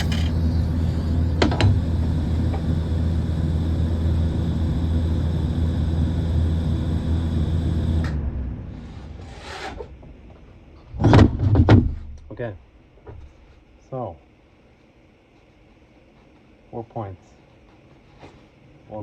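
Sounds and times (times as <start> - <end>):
welder humming with hiss: 0.0 - 8.1.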